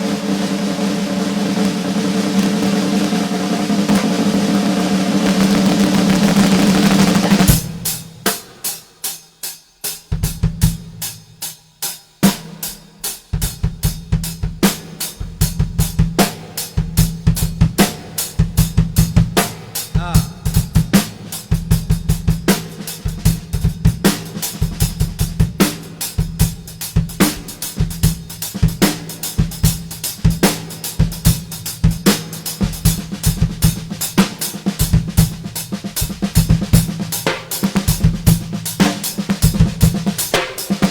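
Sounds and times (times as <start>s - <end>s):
drum kit playing: 0.0s - 40.9s.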